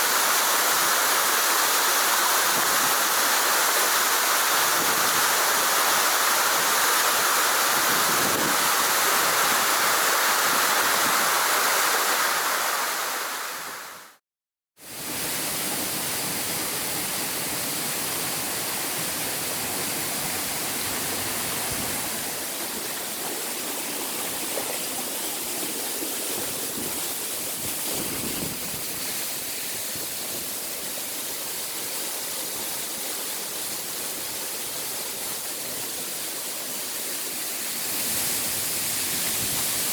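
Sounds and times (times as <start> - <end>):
waterfall rushing: 0.0 - 14.2.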